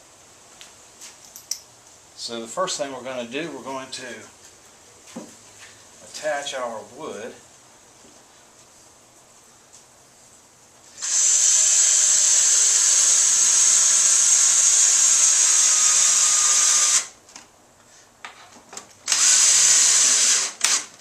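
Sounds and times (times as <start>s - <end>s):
power drill driving screw into wood: 10.9s - 17.2s, 19.0s - 21.0s.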